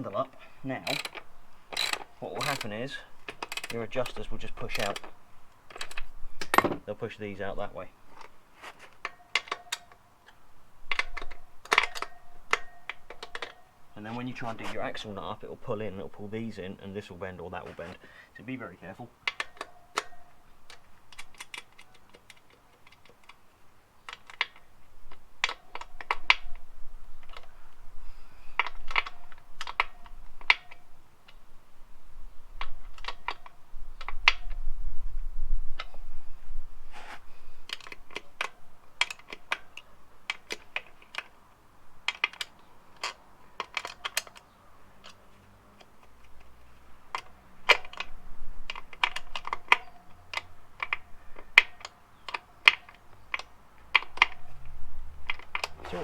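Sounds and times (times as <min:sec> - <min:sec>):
socket ratchet clicking: 0:00.8 - 0:06.6, 0:47.1 - 0:54.5.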